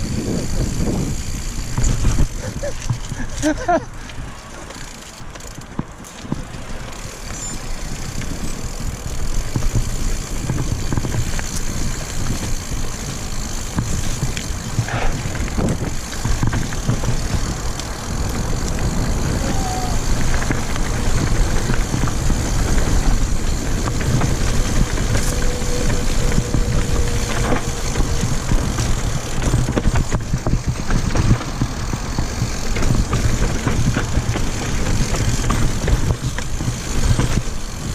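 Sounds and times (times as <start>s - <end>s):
wind rushing over microphone: 0.0s - 4.3s, 5.6s - 37.9s
bicycle tyre noise: 0.0s - 37.9s
bike knocks and rattles: 0.0s - 37.9s.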